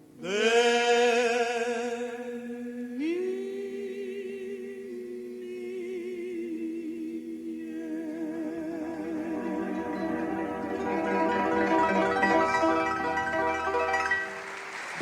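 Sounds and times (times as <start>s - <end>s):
person singing a long held note: 8.4s - 12.2s
instrumental accompaniment: 8.8s - 15.0s
melodic line: 9.0s - 15.0s.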